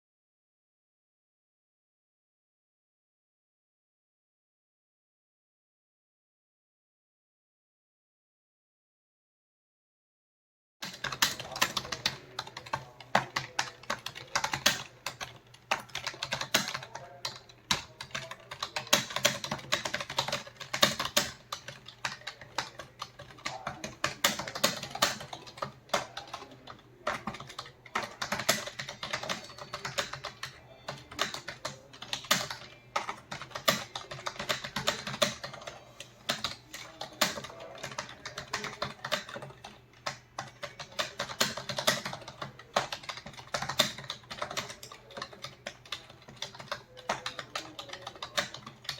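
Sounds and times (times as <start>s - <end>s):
fast typing on keyboard: 10.8s - 48.9s.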